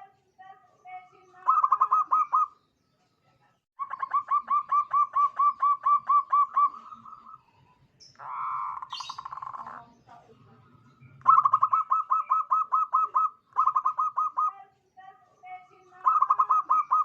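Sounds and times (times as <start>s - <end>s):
dove cooing: 1.4s - 2.5s, 3.8s - 7.5s, 8.2s - 9.9s, 11.1s - 14.7s, 15.8s - 17.0s.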